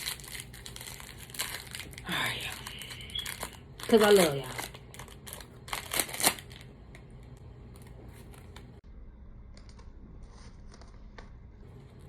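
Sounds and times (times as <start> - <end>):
candy wrapper rustling: 0.0 - 8.7.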